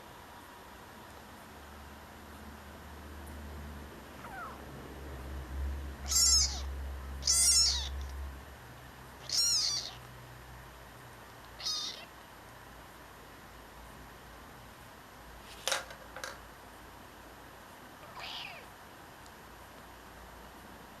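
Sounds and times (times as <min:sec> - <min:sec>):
kitten meowing: 0:04.2 - 0:04.6, 0:06.0 - 0:08.1, 0:09.2 - 0:10.1, 0:11.6 - 0:12.2, 0:18.0 - 0:18.7.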